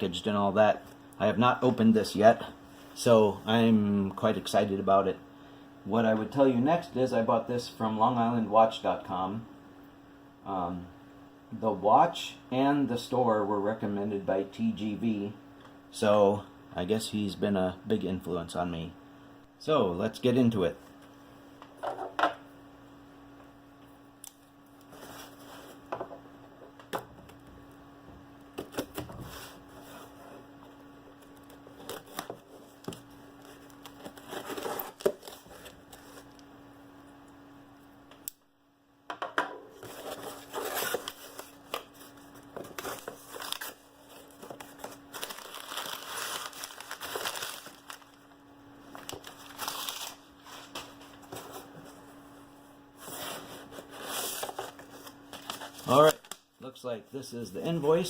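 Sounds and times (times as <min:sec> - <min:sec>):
packing material tearing and crinkling: 0:31.4 - 0:36.4, 0:39.8 - 0:48.2, 0:48.9 - 0:50.9, 0:54.0 - 0:56.4.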